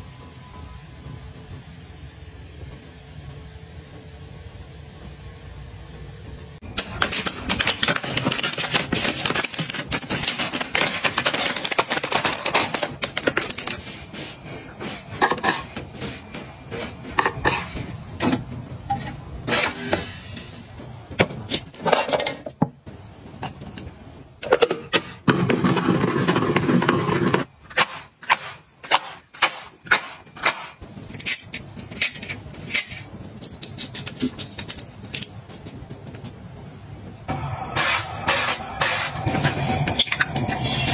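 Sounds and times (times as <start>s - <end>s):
household objects clicking and tapping: 6.7s - 13.8s.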